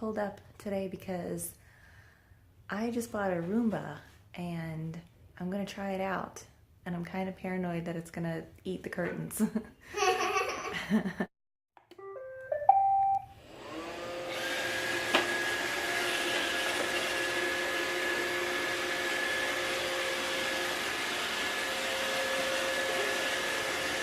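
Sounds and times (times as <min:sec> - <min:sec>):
robot vacuum start-up beeps: 0:12.6 - 0:13.4
vacuum motor humming: 0:13.4 - 0:24.0.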